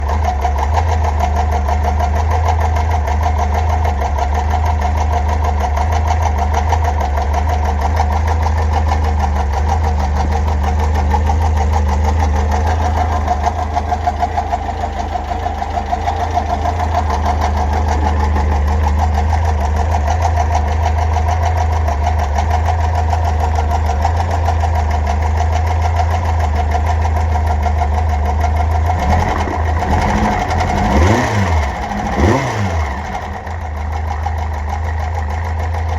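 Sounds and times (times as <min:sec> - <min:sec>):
car engine idling: 0:00.0 - 0:35.9
fast metallic ticking: 0:11.2 - 0:20.0.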